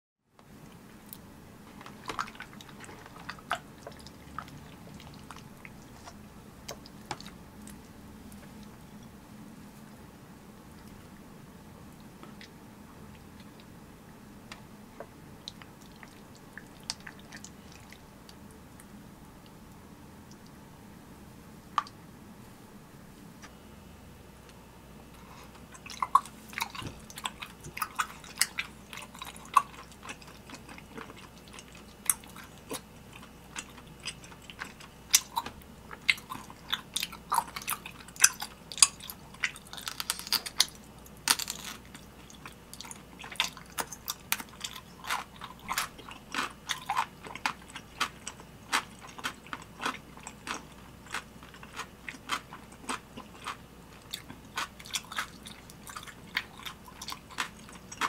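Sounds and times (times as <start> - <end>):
close chewing and biting: 1.1 - 8.8, 25.2 - 58.0.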